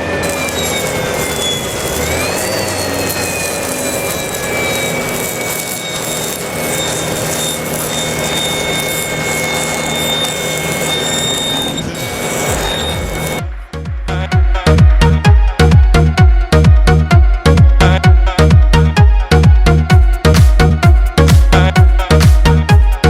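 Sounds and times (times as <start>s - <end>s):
loud hiss: 0.0s - 13.6s
machine whine: 0.0s - 17.6s.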